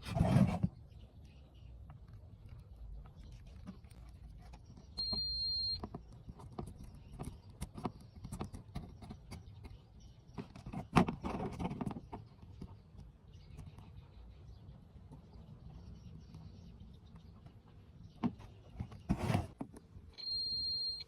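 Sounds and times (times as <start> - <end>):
high electronic beep: 5.0 - 5.8, 20.2 - 21.0.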